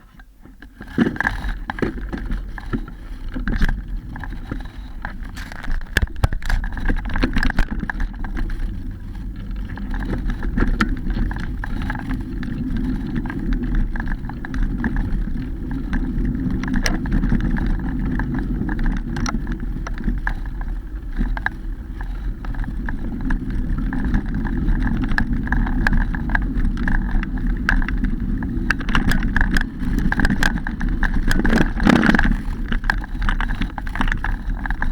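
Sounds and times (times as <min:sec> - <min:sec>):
bike knocks and rattles: 0:00.0 - 0:34.9
rumble of wind and tyres: 0:00.0 - 0:34.9.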